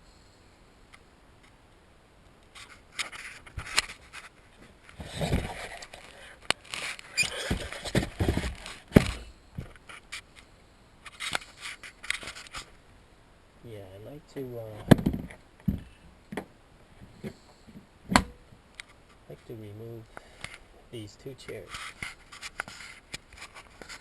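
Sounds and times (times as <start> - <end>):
scraping and rustling of parts: 2.5 - 12.8, 21.5 - 24.0.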